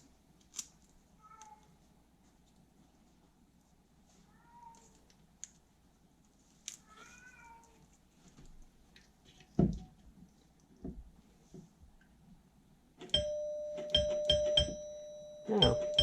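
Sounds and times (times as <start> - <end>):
cat meowing: 6.8 - 7.8
doorbell ringing: 13.1 - 16.0.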